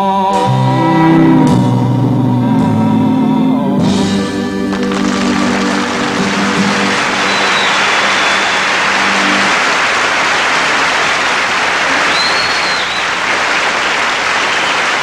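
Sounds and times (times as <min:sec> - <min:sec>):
band holding chord: 0:01.2 - 0:11.9
audience applauding: 0:04.7 - 0:15.0
shrill whistle from crowd: 0:05.5 - 0:15.0.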